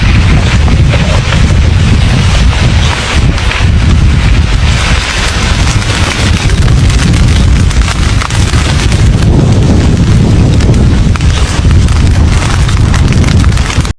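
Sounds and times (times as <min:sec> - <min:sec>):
dense crackling: 0:00.0 - 0:13.9
volcano low rumble: 0:00.0 - 0:13.9.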